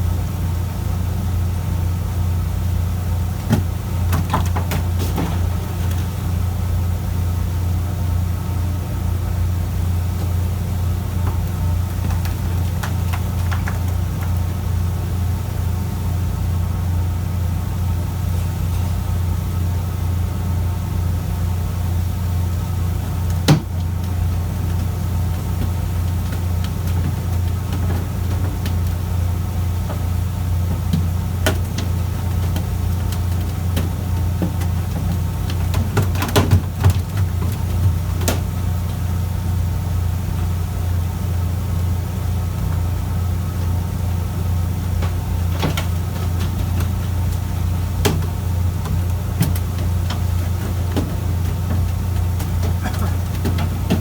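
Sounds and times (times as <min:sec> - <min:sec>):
boat engine droning: 0:00.0 - 0:54.0
knocks and clatters on board: 0:03.4 - 0:06.2, 0:11.2 - 0:14.6, 0:23.3 - 0:39.0, 0:44.9 - 0:54.0.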